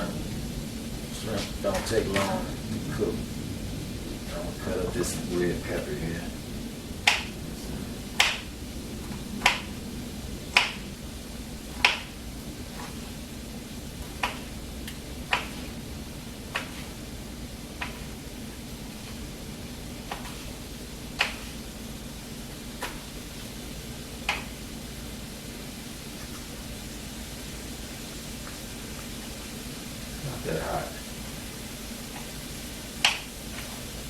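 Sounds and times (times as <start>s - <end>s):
steady low hum: 0.0s - 34.0s
knife striking cutting board: 16.5s - 16.9s.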